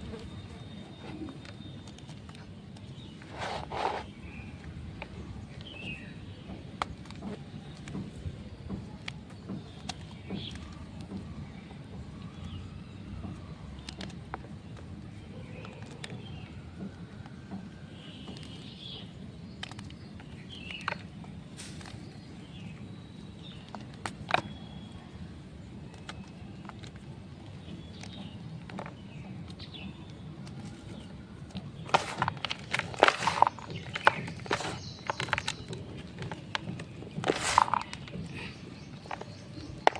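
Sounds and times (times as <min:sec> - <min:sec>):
chalk being crushed by hand: 0:01.0 - 0:05.8, 0:30.5 - 0:39.9.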